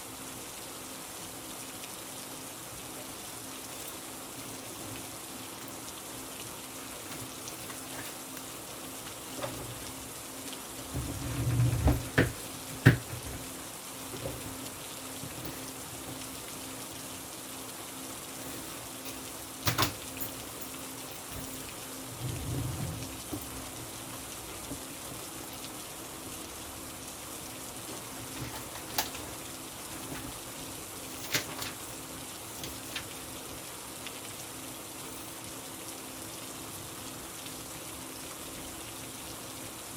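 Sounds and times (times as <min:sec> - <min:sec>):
rain hiss: 0:00.0 - 0:39.9.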